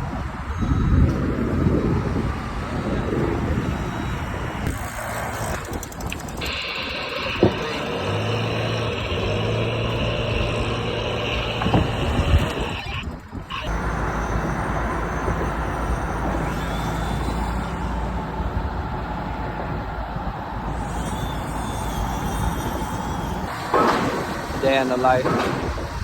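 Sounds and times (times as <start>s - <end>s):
construction machinery engine running: 0.0s - 26.0s
deep steady rumble: 6.0s - 23.5s
knocks: 25.2s - 26.0s.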